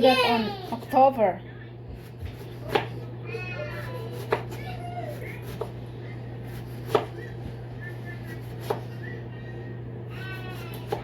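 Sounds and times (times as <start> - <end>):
steady low hum: 0.0 - 11.0
knife chopping on cutting board: 1.9 - 3.0, 3.8 - 4.6, 6.5 - 7.3, 8.3 - 8.9, 10.4 - 11.0.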